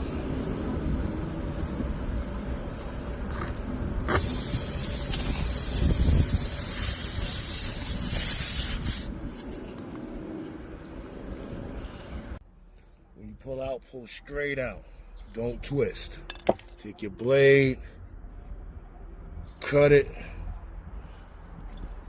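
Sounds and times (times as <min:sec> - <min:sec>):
air hissing at a tire: 0:00.0 - 0:09.9.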